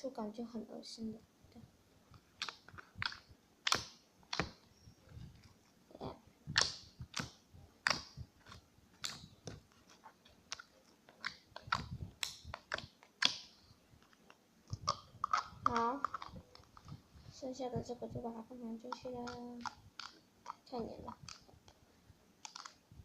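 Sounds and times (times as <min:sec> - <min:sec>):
slime squeezed with wet pops: 0:02.4 - 0:04.6, 0:06.5 - 0:09.6, 0:10.5 - 0:13.6, 0:14.7 - 0:17.0.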